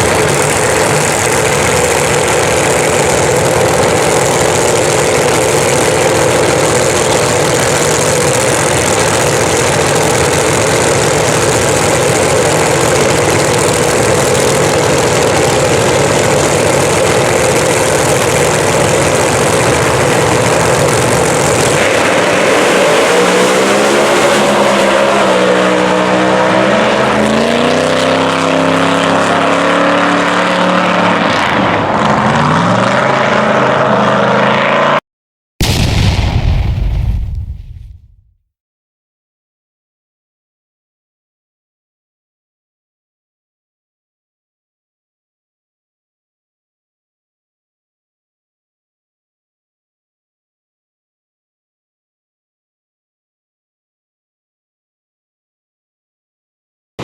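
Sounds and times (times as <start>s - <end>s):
drag racing engine running: 0.0s - 35.0s
engine revving pitched note: 18.6s - 35.0s.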